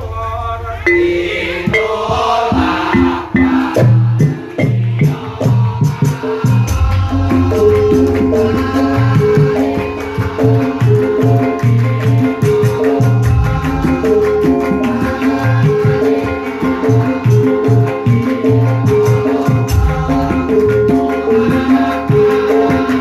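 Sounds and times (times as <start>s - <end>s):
gamelan ensemble playing: 0.8s - 23.0s.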